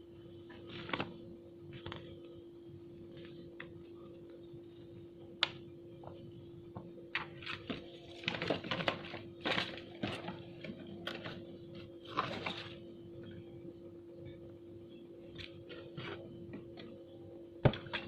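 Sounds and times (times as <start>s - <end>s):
steady low hum: 0.0s - 18.0s
packaging rustling: 7.2s - 12.8s.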